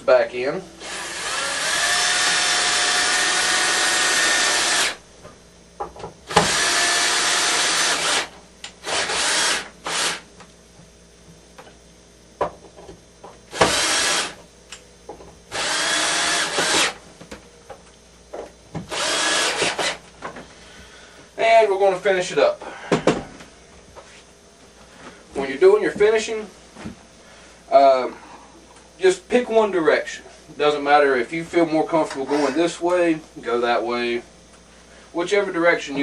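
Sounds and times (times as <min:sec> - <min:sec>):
power drill driving screws: 0:00.8 - 0:05.0, 0:06.3 - 0:10.2, 0:13.5 - 0:14.4, 0:15.5 - 0:17.0, 0:18.9 - 0:20.0.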